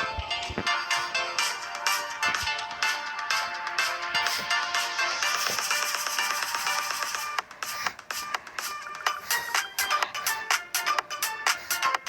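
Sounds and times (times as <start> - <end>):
electronic music with steady beat: 0.0 - 12.0.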